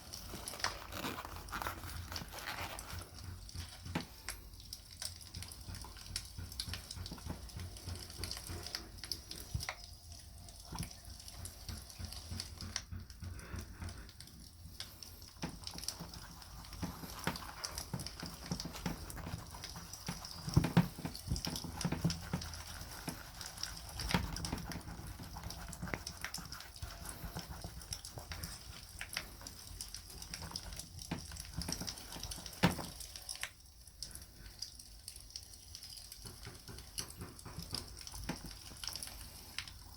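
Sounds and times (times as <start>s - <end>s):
rubbing and handling noise: 0.0s - 33.5s, 35.4s - 39.9s.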